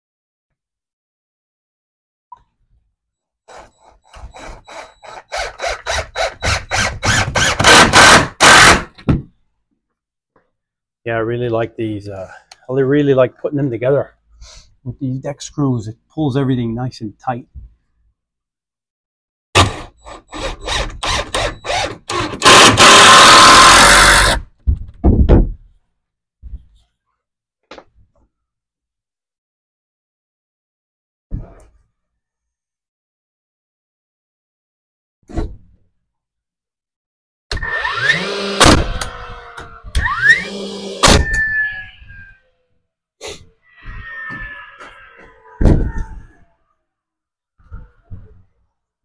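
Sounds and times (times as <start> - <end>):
power driver driving screws: 3.5 - 8.9, 19.6 - 24.4, 37.5 - 39.2, 39.9 - 41.4.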